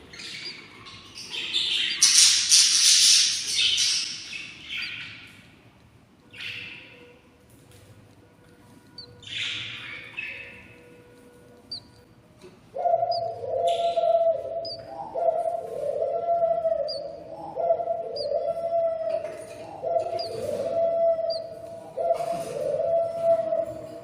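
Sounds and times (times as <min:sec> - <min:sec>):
budgerigar chicks begging calls: 0:00.0 - 0:05.2, 0:06.4 - 0:07.0, 0:08.9 - 0:10.8, 0:11.6 - 0:12.0, 0:12.8 - 0:23.3.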